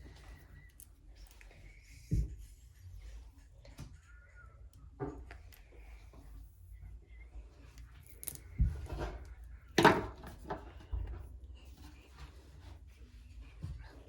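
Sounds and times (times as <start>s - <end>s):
soft rubbing: 5.7s - 14.0s.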